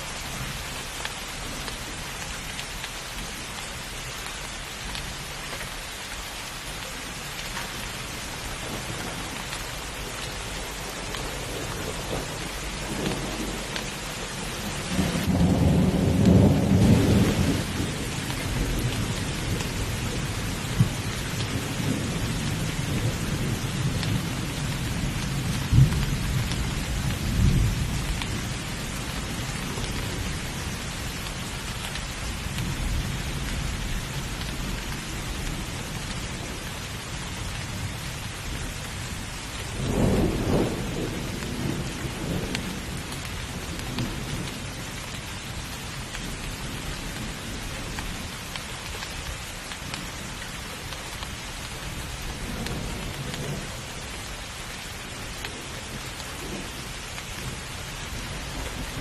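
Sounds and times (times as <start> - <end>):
heavy rain: 0.0 - 59.0
thunder rumbling: 8.6 - 30.8, 37.8 - 48.6.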